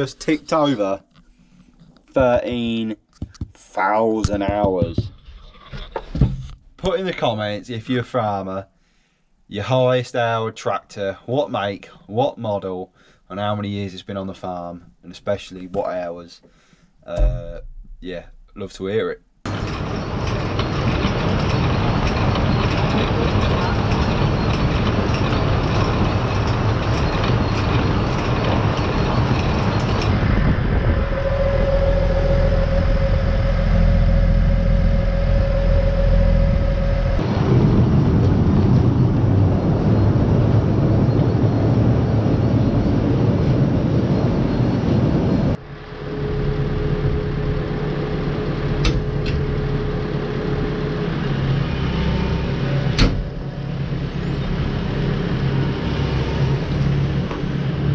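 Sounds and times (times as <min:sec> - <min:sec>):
tractor engine: 0:19.5 - 0:40.0, 0:45.6 - 0:57.9
conveyors running: 0:19.5 - 0:57.9
steady machine whine: 0:19.5 - 0:57.9.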